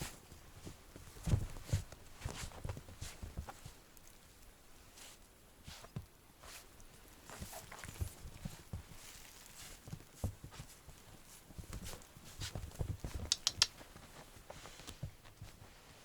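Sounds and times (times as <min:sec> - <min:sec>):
sharp clicks: 0:13.3 - 0:13.8.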